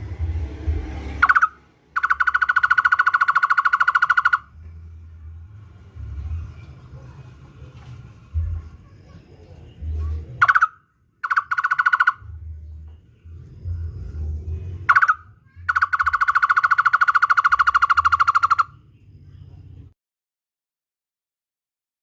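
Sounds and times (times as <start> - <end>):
low rumble: 0.0 - 2.0, 4.4 - 10.4, 12.2 - 15.6
bird calling in hollow notes: 1.2 - 4.6, 10.3 - 12.7, 14.8 - 18.8.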